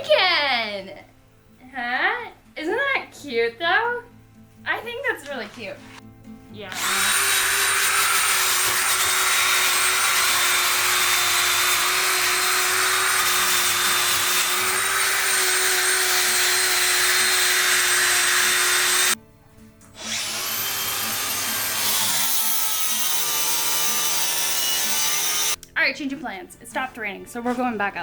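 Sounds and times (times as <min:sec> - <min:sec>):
power tool cutting wood: 0:06.7 - 0:19.2, 0:20.0 - 0:25.6.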